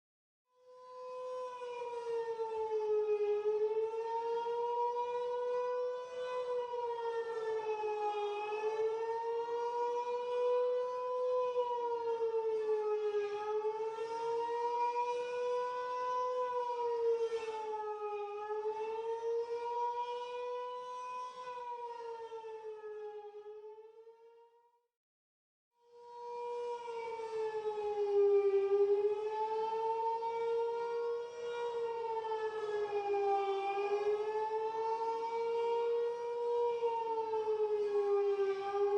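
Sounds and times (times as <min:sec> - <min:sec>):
air-raid siren wailing: 0:00.5 - 0:24.6, 0:25.8 - 0:38.9.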